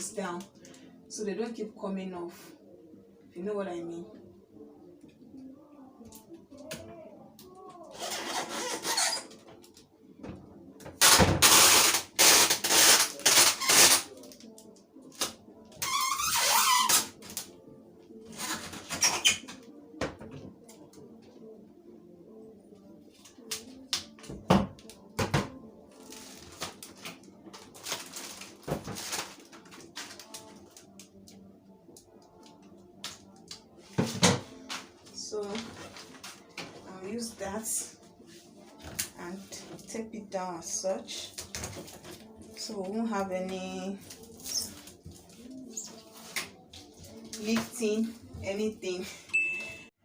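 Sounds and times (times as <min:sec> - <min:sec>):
adhesive tape pulled off roll: 0:11.0 - 0:14.4.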